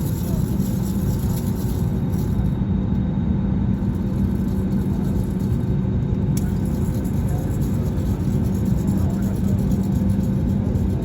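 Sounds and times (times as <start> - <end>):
airliner cabin rumble and hum: 0.0 - 11.0.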